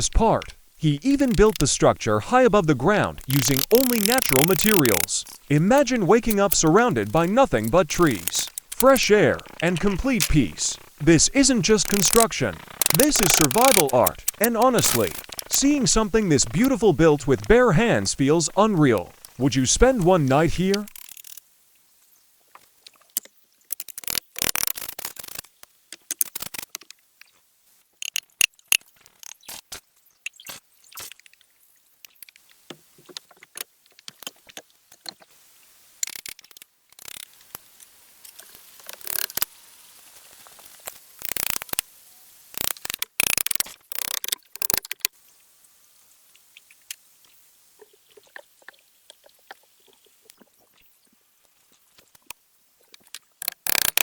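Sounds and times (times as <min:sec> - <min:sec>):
short rustling bursts: 0:00.2 - 0:21.0.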